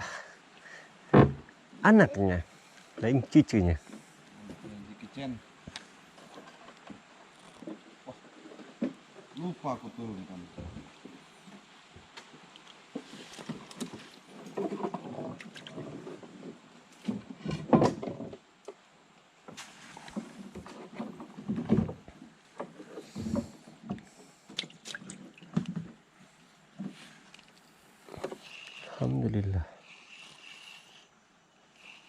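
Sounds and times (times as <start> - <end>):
knocks in wooden boat: 1.1 - 1.5.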